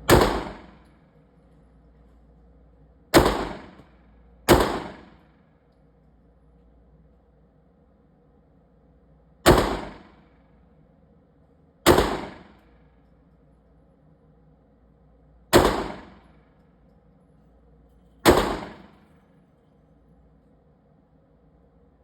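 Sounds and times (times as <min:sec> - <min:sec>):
pistol shots with echo: 0:00.0 - 0:00.9, 0:03.1 - 0:03.9, 0:04.5 - 0:05.3, 0:09.4 - 0:10.2, 0:11.8 - 0:12.6, 0:15.5 - 0:16.4, 0:18.2 - 0:19.1.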